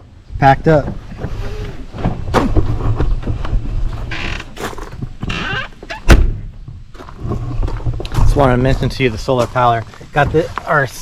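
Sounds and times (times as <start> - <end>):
loud sharp thud: 2.3 - 3.0, 6.1 - 6.5.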